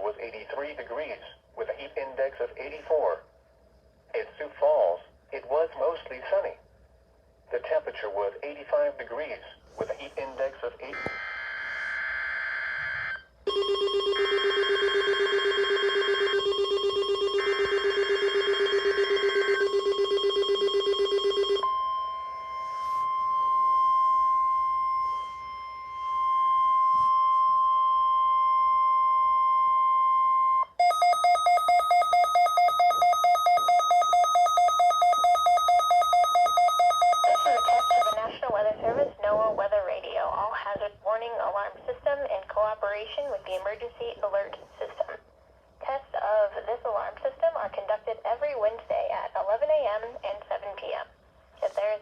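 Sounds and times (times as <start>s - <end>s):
high-pitched pulsing alarm beep: 10.9s - 38.2s
loud rapid beeping: 30.8s - 38.2s.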